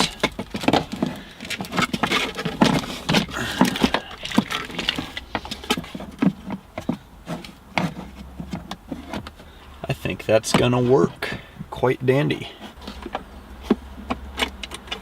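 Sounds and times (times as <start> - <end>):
hard parts clicking and knocking: 0.0 - 9.6, 12.6 - 15.0.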